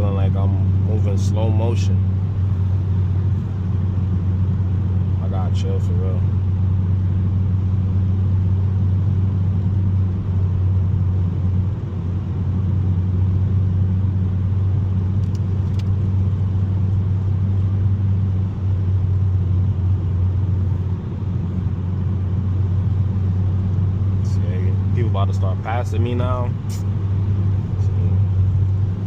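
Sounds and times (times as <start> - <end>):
car engine hum in cabin: 0.0 - 29.0
tyre and road noise: 6.0 - 29.0.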